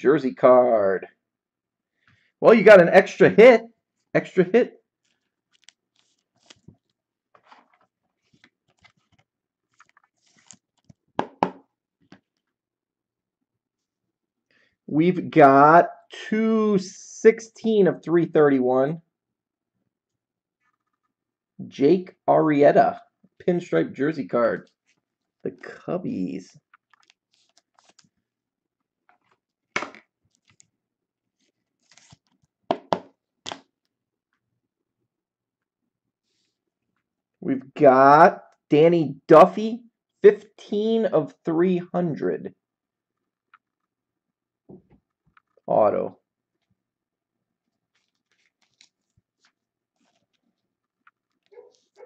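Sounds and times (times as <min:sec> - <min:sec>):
plastic card holders crinkling: 0:05.0 - 0:12.4, 0:26.5 - 0:28.2, 0:29.1 - 0:30.7, 0:31.4 - 0:33.8, 0:47.8 - 0:52.0.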